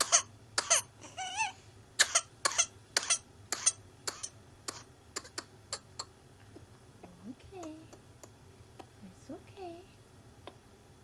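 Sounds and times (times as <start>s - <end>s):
child coughing rapidly: 0.0s - 1.0s, 2.0s - 6.0s.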